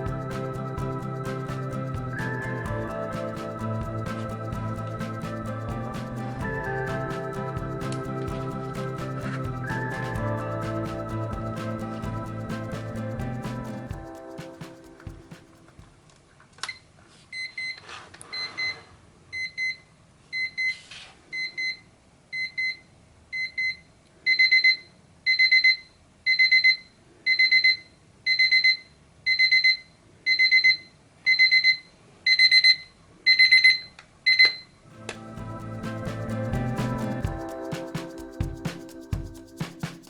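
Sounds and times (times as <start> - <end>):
electronic alarm clock beeping: 23.4 - 34.6.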